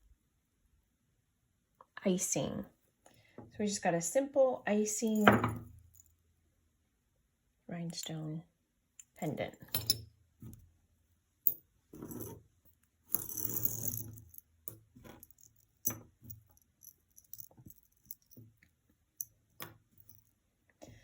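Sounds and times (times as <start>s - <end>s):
jewelry clinking and jangling: 9.5s - 10.6s, 11.5s - 12.4s, 13.1s - 20.4s.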